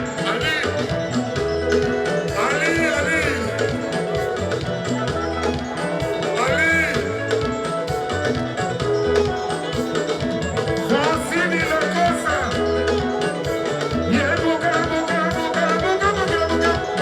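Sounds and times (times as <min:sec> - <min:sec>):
live band bass and guitars: 0:00.0 - 0:17.0
lead singer singing: 0:02.0 - 0:04.9, 0:05.8 - 0:07.4, 0:10.8 - 0:17.0.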